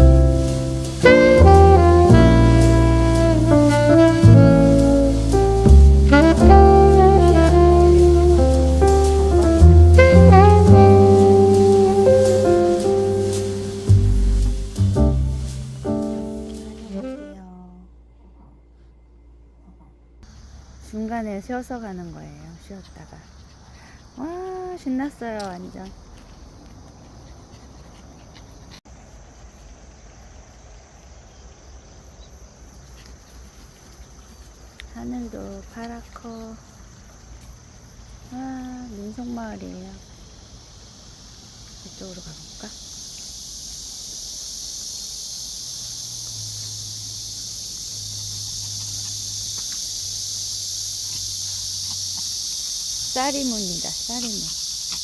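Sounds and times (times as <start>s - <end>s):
crickets chirring: 0.0s - 17.4s, 20.2s - 55.0s.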